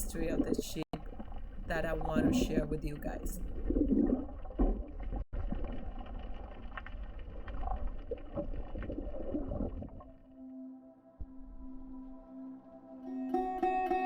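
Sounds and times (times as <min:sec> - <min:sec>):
muffled underwater rumble: 0:00.0 - 0:10.4
clicks and crackles: 0:03.9 - 0:10.1
music with plucked tones: 0:10.6 - 0:14.0.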